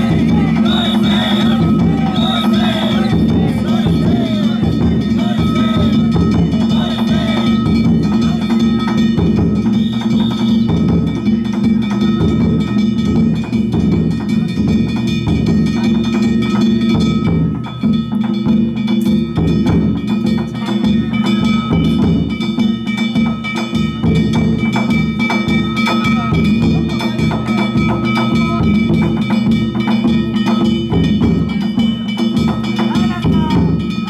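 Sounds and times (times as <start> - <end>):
hand gongs ringing: 0.0 - 34.0
large taiko drum beating: 0.0 - 34.0.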